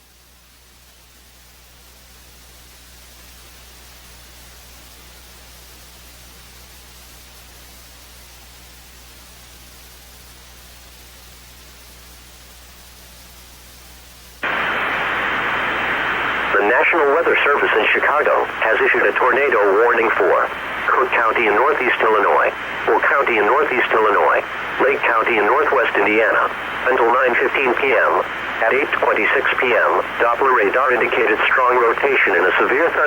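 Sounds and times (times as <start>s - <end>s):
faint audio line hiss: 0.0s - 33.0s
low hum: 14.4s - 33.0s
radio static: 14.4s - 33.0s.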